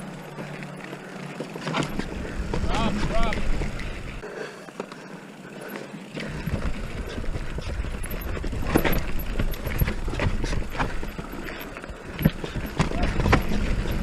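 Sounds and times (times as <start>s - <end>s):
chain and frame clattering: 6.1s - 14.0s.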